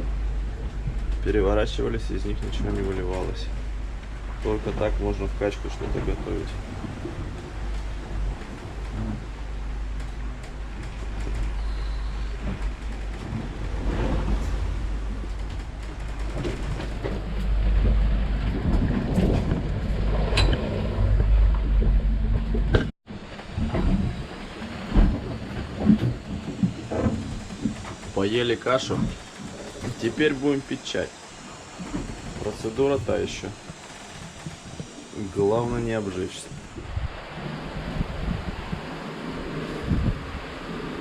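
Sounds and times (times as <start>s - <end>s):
wind rumbling on microphone: 0.0s - 30.6s, 31.4s - 41.0s
sailing yacht in rough sea: 0.0s - 41.0s
knocks and rattles: 12.3s - 30.2s.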